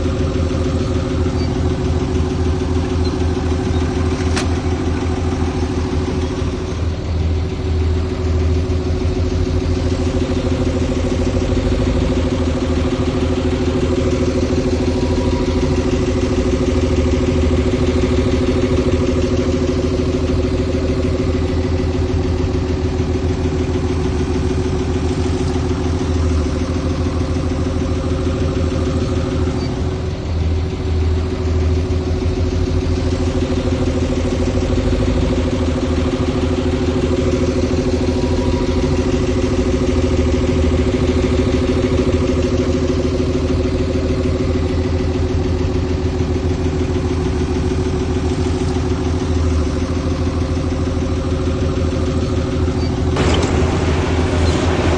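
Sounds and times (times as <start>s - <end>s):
heavy diesel engine running: 0.0s - 54.9s.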